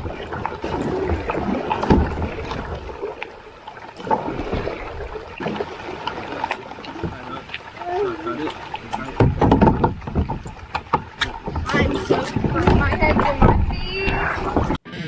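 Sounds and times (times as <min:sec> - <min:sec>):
kayak paddle splashing: 0:00.0 - 0:14.8
low knocks: 0:08.5 - 0:14.8.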